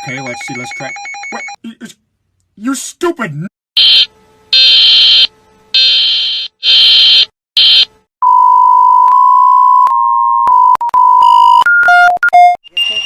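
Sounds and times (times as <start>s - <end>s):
harsh alarm buzzing: 3.8s - 8.0s.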